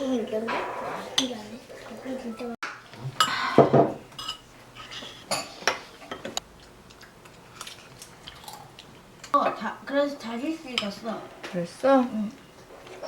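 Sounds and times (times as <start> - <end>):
dishes and cutlery clinking: 2.6 - 6.4.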